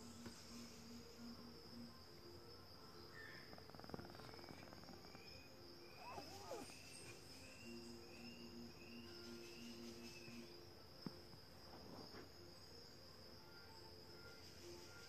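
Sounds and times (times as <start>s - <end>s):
kitten whistling snore: 6.0s - 6.9s.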